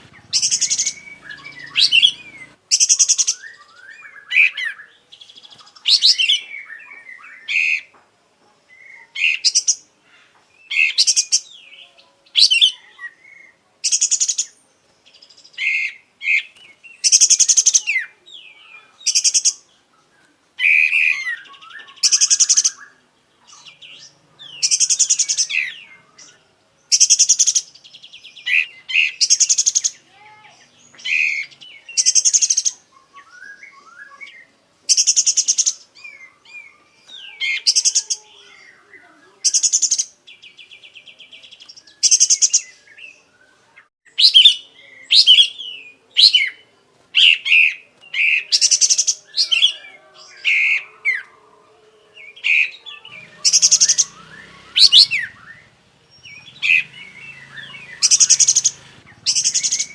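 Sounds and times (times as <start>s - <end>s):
songbird rattling trills: 0.0s - 3.2s
bird chirps and whistles: 53.1s - 55.7s.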